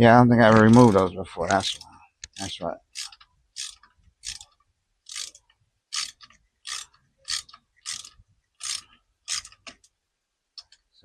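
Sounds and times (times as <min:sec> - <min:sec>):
ratchet wrench clicking: 0:02.4 - 0:04.5, 0:05.1 - 0:09.7.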